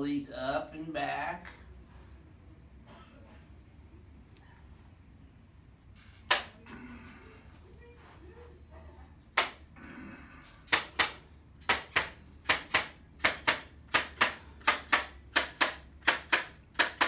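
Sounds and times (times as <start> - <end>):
sharp clicks in pairs: 9.4 - 9.6, 10.7 - 17.0.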